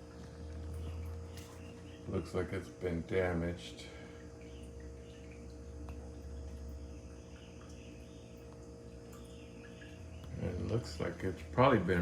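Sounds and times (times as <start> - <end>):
steady low hum: 0.0 - 12.0
faint high chirping: 3.9 - 11.4.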